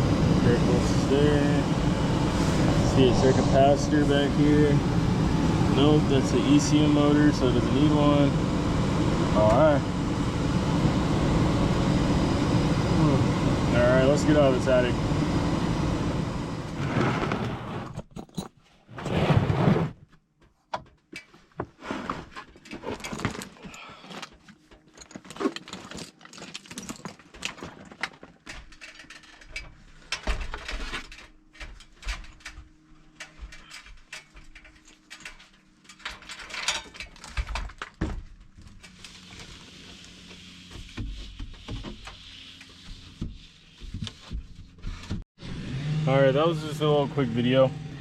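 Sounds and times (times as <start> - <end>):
short loud rush of noise: 0.6 - 6.8
knocks and rattles of tools: 20.4 - 39.5.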